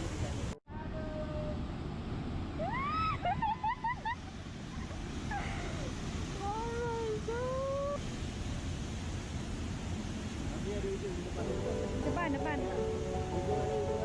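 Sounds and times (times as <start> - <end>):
waterfall rushing: 4.1 - 14.0.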